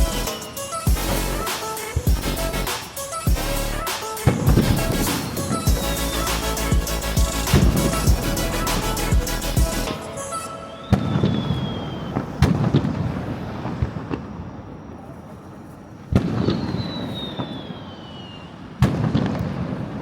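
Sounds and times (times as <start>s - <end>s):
fireworks bursting with crackle: 0.0s - 20.0s
whistle sliding down in pitch: 9.9s - 12.2s.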